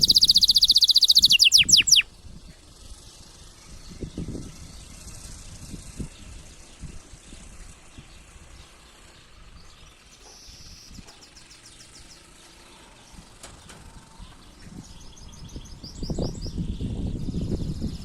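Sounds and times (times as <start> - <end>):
canary singing trills: 0.0 - 2.1.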